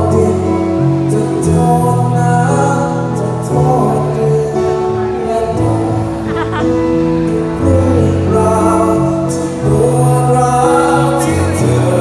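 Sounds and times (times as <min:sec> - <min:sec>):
bass line: 0:00.0 - 0:12.0
live band playing slow song: 0:00.0 - 0:12.0.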